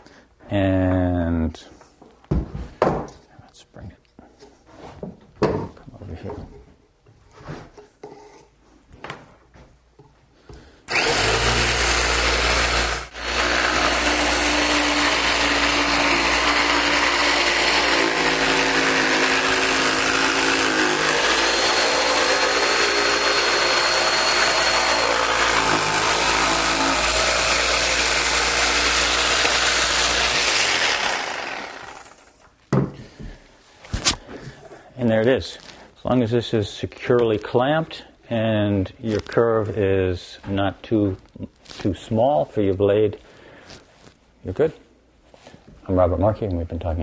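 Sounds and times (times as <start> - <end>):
scroll saw cutting wood: 10.9 - 32.5.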